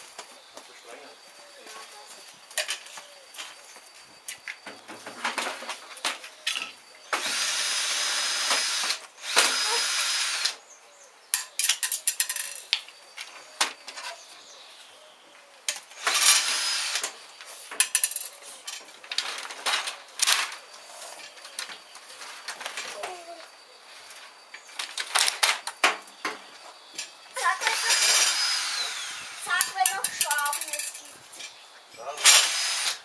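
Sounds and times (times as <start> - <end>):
cordless drill running: 7.2 - 10.6, 16.0 - 17.1, 27.6 - 29.5, 32.2 - 33.0
loose parts clattering: 11.4 - 13.3, 17.7 - 23.1, 29.5 - 32.4.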